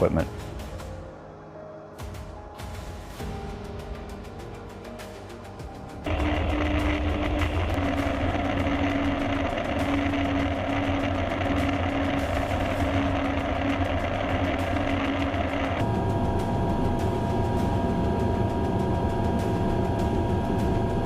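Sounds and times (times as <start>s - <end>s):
engine running with low rumble: 6.0s - 21.0s.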